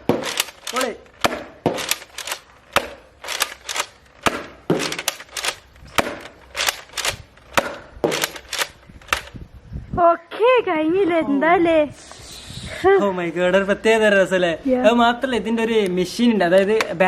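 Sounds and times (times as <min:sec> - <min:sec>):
toy blaster popping: 0:00.0 - 0:09.3.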